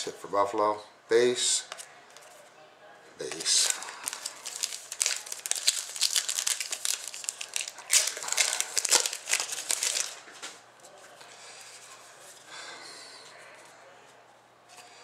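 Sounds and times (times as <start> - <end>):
wrapper tearing and crinkling: 3.2 - 10.2.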